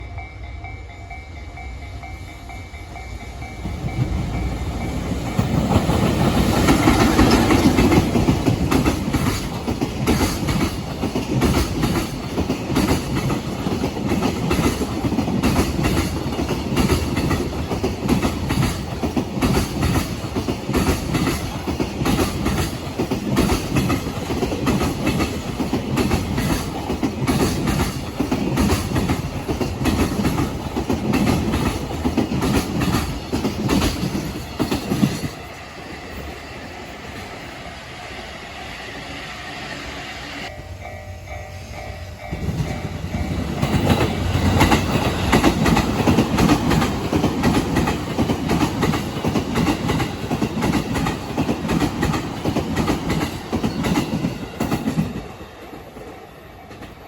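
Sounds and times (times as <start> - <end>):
level-crossing warning bell: 0.0 - 8.8, 40.4 - 47.9
freight train rumbling: 0.0 - 57.0
wheels clickety-clack on rail joints: 2.0 - 37.6, 40.4 - 57.0.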